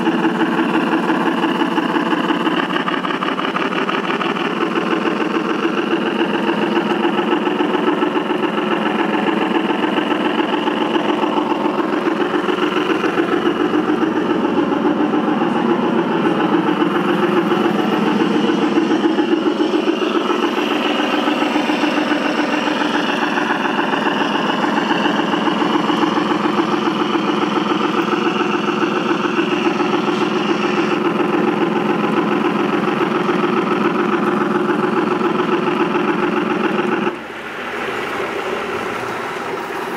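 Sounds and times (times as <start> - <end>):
model steam locomotive running: 0.0 - 39.9.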